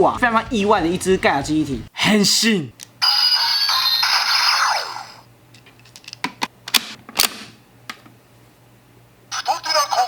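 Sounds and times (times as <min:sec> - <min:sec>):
toy electronic sound effect: 0:03.0 - 0:05.3.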